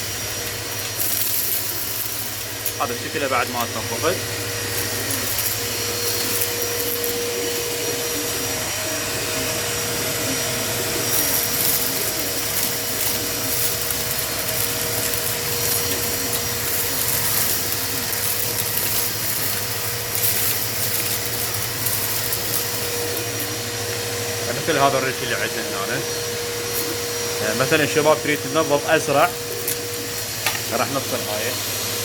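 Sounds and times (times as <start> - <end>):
vacuum cleaner whining: 0.0 - 32.0.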